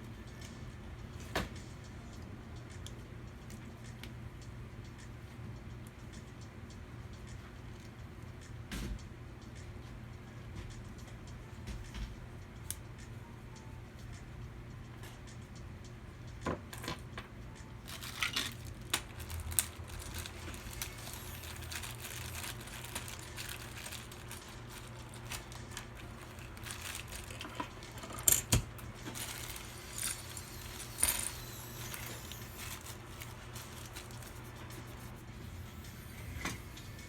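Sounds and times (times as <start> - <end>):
steady low hum: 17.0 - 37.0
small hard parts clicking: 17.9 - 34.8.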